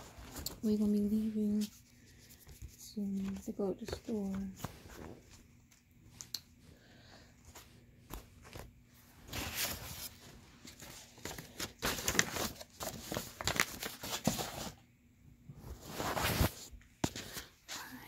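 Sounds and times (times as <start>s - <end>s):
bags or papers crinkling: 8.1s - 14.8s.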